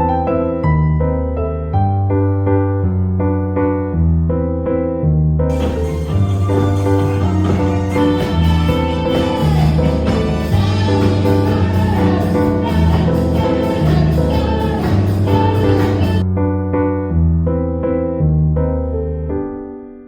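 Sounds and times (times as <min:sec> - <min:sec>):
background music: 0:05.5 - 0:16.3.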